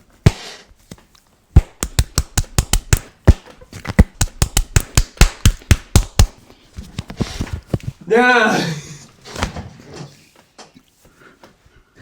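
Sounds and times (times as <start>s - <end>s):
sharp clicks or taps: 1.6s - 6.4s.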